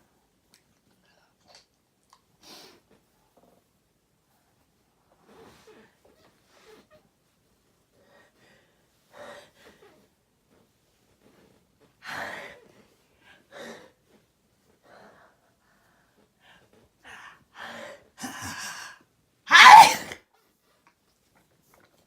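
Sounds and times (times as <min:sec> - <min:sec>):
person gasping breaths: 0:17.1 - 0:20.2
person sneezing: 0:18.2 - 0:20.2.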